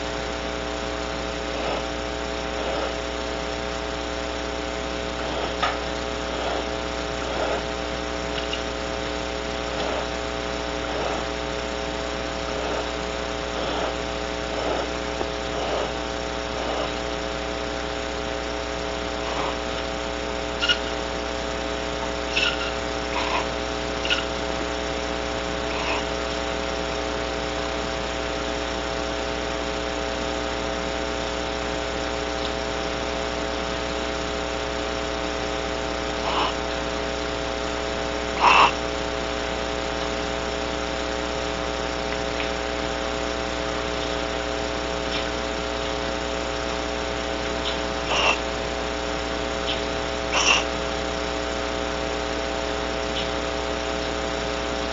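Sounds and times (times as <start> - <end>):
steady electrical buzz: 0.0 - 54.9
barn owl calls: 10.9 - 11.3, 19.2 - 19.7, 20.5 - 21.1, 22.2 - 24.4, 25.6 - 26.2, 36.2 - 36.8, 38.3 - 38.9, 45.1 - 45.4, 47.6 - 48.6, 49.5 - 50.8, 53.1 - 53.4.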